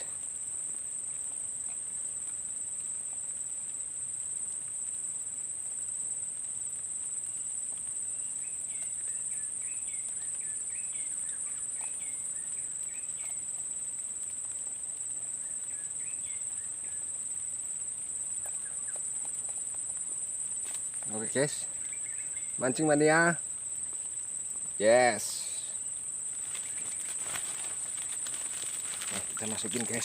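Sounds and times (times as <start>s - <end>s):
insects droning: 0.0s - 30.0s
bird chirping: 21.1s - 23.1s, 26.4s - 30.0s.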